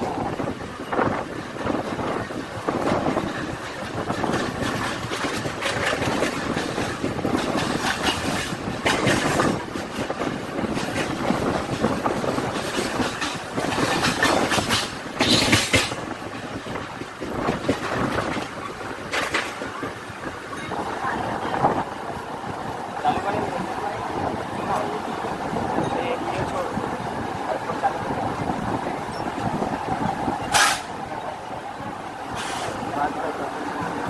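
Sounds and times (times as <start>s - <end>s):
train wheels rumbling on rails: 0.0s - 34.0s
short clicks of train wheels: 12.5s - 16.1s, 30.5s - 31.0s.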